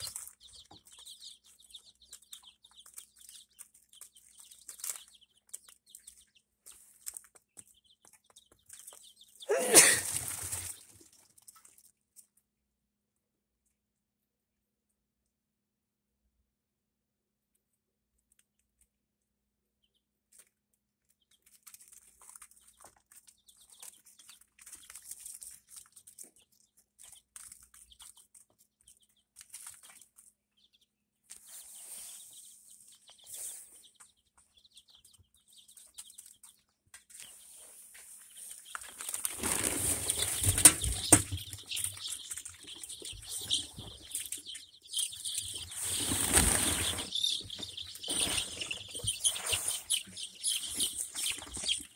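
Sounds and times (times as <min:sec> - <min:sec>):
rustling: 0:00.0 - 0:09.4, 0:10.0 - 0:12.4, 0:20.3 - 0:30.4, 0:31.2 - 0:51.9
chicks peeping: 0:00.0 - 0:12.5, 0:17.4 - 0:51.9
wing flapping: 0:45.8 - 0:47.3.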